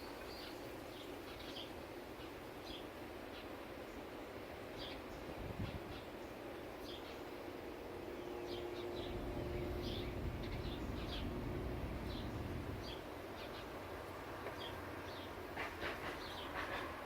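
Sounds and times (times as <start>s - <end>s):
gusty wind buffeting microphone: 5.3s - 6.0s, 8.9s - 13.1s
birds chirping: 8.2s - 13.8s.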